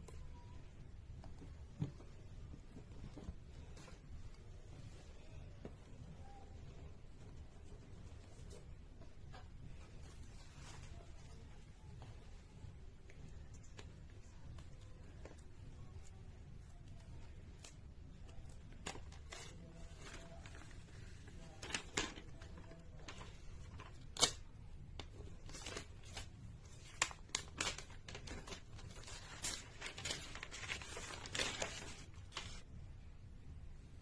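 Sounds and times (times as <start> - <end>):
paper and plastic rustling: 18.4 - 24.4, 25.0 - 32.6
wrapping tearing: 21.6 - 24.5, 25.1 - 32.6.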